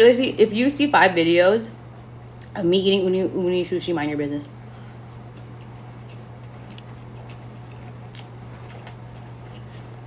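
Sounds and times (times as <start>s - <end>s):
steady low hum: 0.0s - 10.0s
chewing with wet mouth clicks: 5.1s - 10.0s.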